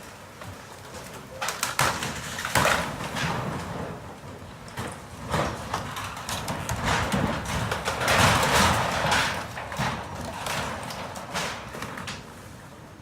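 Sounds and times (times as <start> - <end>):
house cracking and knocking: 1.4 - 4.0, 4.7 - 12.3.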